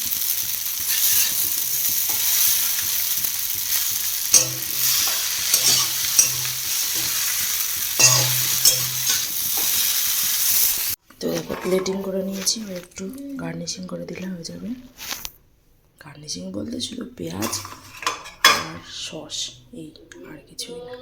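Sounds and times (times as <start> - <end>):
noodles sizzling in a frying pan: 0.0 - 15.4, 17.2 - 19.0
utensil scraping a pan: 0.4 - 13.1, 17.3 - 18.9.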